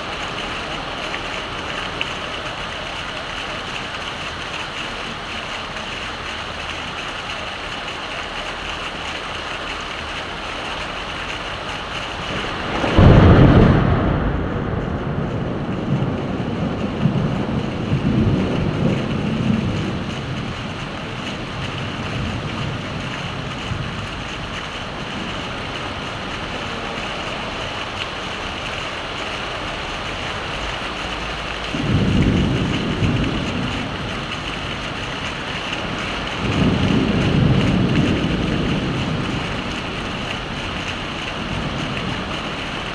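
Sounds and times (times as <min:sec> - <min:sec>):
heavy rain: 0:00.0 - 0:42.9
thunder rumbling: 0:10.1 - 0:42.9.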